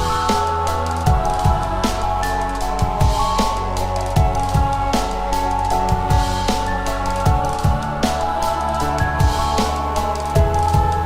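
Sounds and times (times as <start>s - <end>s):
kick drum beats: 0.0s - 0.2s, 1.1s - 1.9s, 2.8s - 3.3s, 4.2s - 4.9s, 5.9s - 6.4s, 7.3s - 8.1s, 9.0s - 9.6s, 10.4s - 11.0s
sustained bass and keyboard tones: 0.0s - 11.0s.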